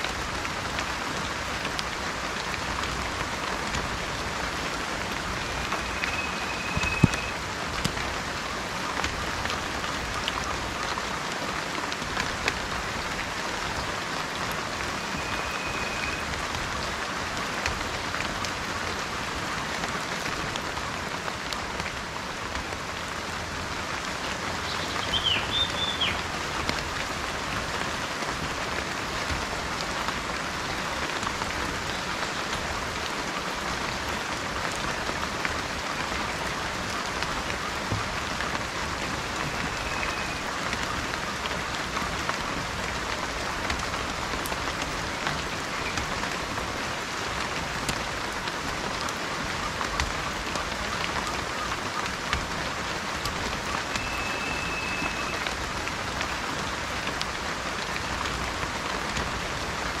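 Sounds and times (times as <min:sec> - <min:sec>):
steady rain falling: 0:00.0 - 1:00.0
bird chirping call: 0:05.4 - 0:07.4, 0:15.1 - 0:16.3, 0:24.6 - 0:26.2, 0:54.0 - 0:55.4
bird whistling: 0:05.4 - 0:07.4, 0:15.2 - 0:16.3, 0:24.7 - 0:26.2, 0:39.5 - 0:40.4, 0:54.0 - 0:55.4.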